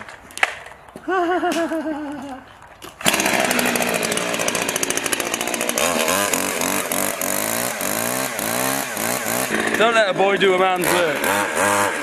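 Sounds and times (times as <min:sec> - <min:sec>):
chainsaw engine revving: 0:03.0 - 0:12.0.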